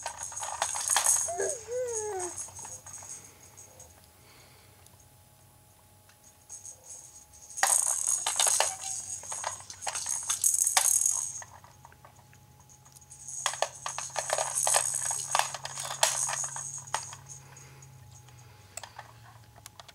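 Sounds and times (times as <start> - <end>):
jingling rattle shaken: 0.0 - 3.9, 6.2 - 19.3.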